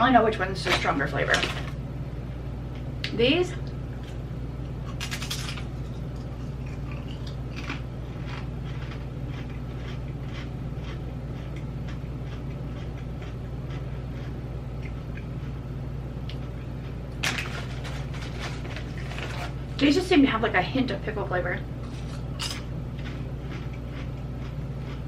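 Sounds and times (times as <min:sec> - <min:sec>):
potato chips crunching: 0:04.9 - 0:14.4, 0:21.8 - 0:25.0.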